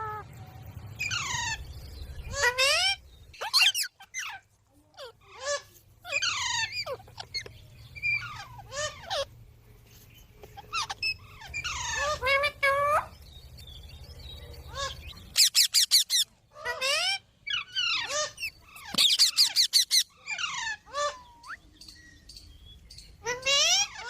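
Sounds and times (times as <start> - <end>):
parrot squawking: 2.2 - 9.3, 10.5 - 13.2, 14.7 - 21.6, 23.2 - 24.0.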